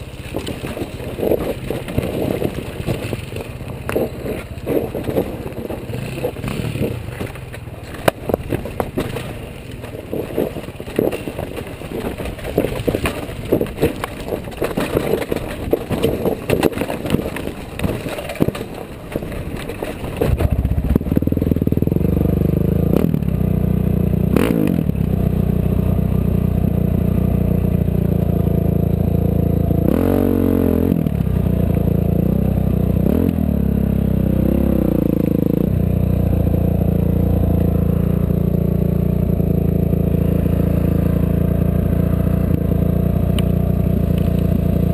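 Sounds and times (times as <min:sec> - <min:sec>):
engine revving: 0:00.0 - 0:09.4, 0:20.2 - 0:44.9
vehicle rattling over rough ground: 0:00.0 - 0:44.9.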